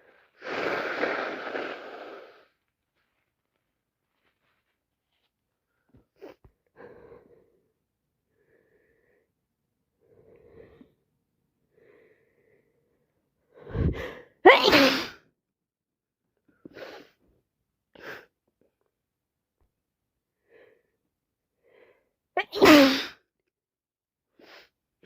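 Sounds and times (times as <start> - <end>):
woman breathing: 11.7 - 14.4
woman sneezing: 14.4 - 15.2, 22.4 - 23.2.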